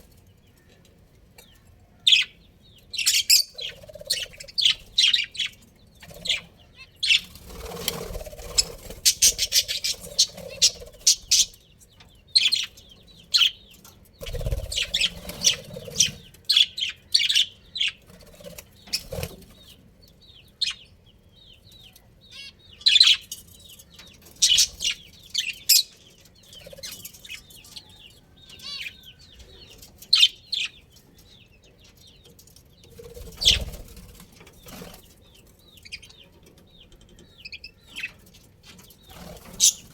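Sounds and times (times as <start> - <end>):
budgerigars chirping and warbling: 1.4 - 39.9.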